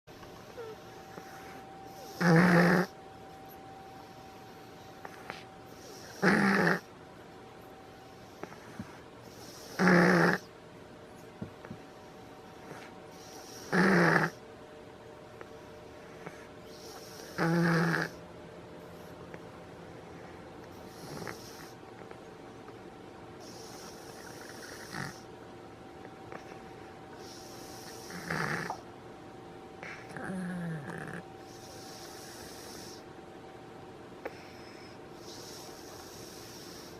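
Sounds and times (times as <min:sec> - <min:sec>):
pet snoring: 0:00.2 - 0:03.0, 0:03.9 - 0:06.9, 0:08.0 - 0:10.5, 0:12.0 - 0:14.4, 0:15.4 - 0:18.2, 0:20.0 - 0:21.8, 0:23.4 - 0:25.3, 0:26.3 - 0:28.9, 0:29.8 - 0:33.1, 0:34.2 - 0:36.9.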